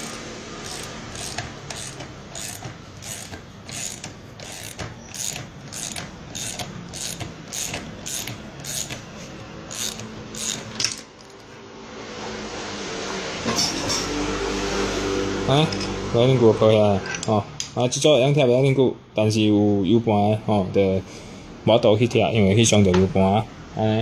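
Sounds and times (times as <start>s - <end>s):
ratchet wrench clicking: 0.0s - 11.5s.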